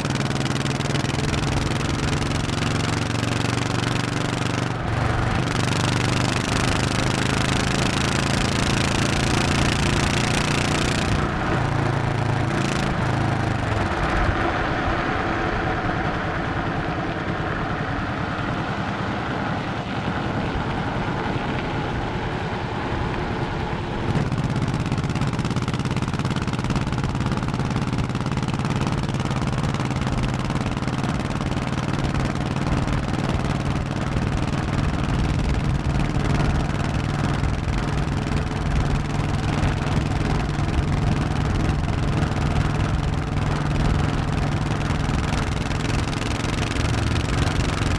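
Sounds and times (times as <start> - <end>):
motorcycle engine running: 0.0 - 47.9.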